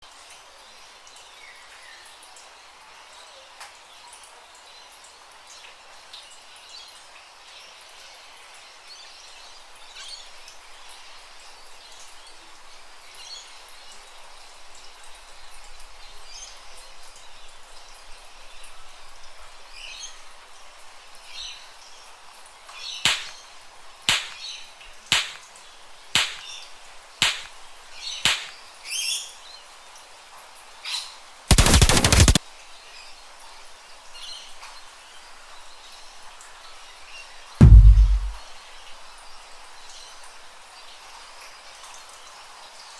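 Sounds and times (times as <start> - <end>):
sharp loud cracks: 23.1 - 23.4, 24.1 - 24.4, 25.1 - 25.4, 26.2 - 26.5, 27.2 - 27.5, 28.3 - 28.6, 31.5 - 32.4, 37.6 - 38.4.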